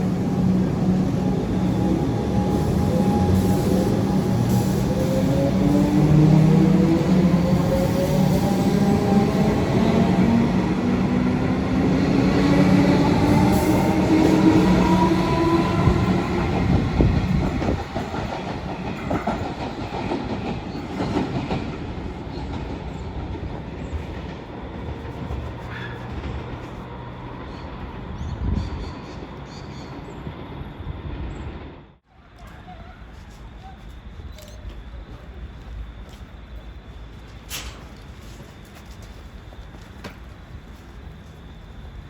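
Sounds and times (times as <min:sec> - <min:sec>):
train wheels clacking on rails: 0:12.5 - 0:26.9.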